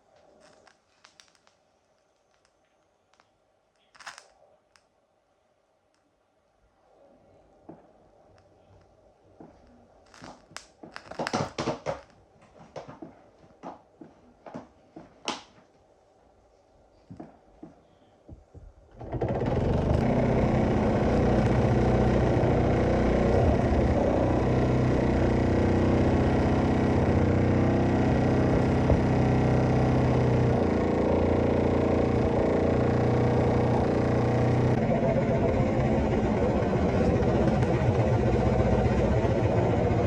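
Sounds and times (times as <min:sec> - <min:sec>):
toy steam engine running: 0:19.6 - 0:40.0.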